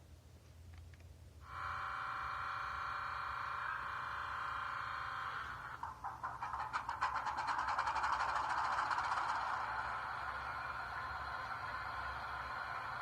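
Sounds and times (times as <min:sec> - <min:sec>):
steam locomotive whistle: 0:01.4 - 0:05.7
locomotive exhaust chuffs: 0:01.4 - 0:13.0.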